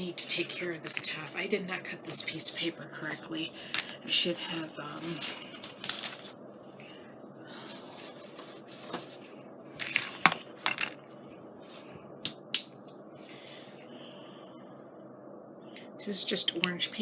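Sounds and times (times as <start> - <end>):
paper rustling: 5.0 - 6.3, 7.7 - 9.2.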